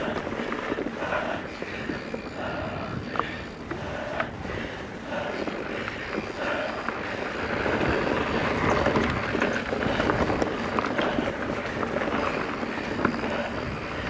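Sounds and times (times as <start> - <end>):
bike clicks and rattles: 0.0 - 14.0
bike tyres on dirt trail: 0.0 - 14.0
wind on microphone: 0.0 - 14.0.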